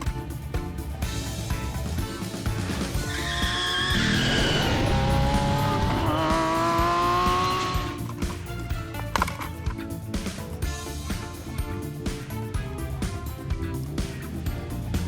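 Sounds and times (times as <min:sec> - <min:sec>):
background music: 0:00.0 - 0:15.0
car engine revving: 0:02.2 - 0:08.6
tyre squeal: 0:02.9 - 0:08.2.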